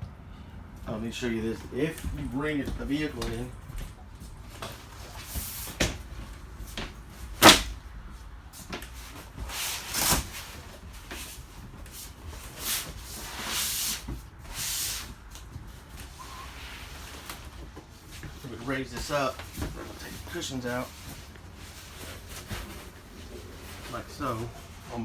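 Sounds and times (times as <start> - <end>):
scuffing: 0.8 - 9.5.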